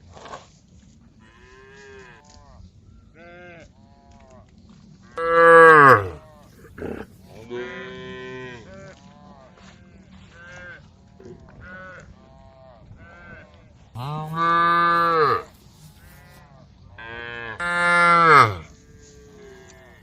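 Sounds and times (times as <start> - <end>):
cows mooing: 5.2 - 8.6, 14.0 - 16.4, 17.2 - 18.7.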